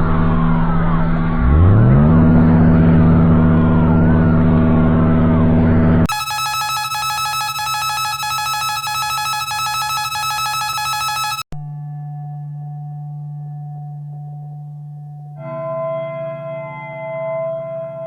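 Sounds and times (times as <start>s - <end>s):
harsh pulsing buzz: 6.1s - 11.4s
electronic alarm tones: 6.1s - 11.5s.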